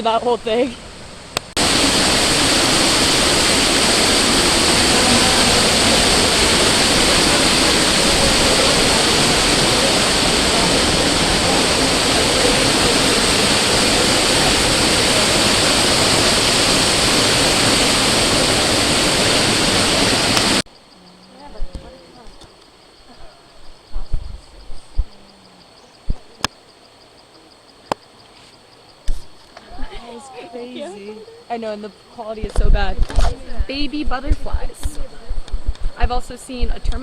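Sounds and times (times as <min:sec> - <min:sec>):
rush of flowing water: 0:00.6 - 0:20.6.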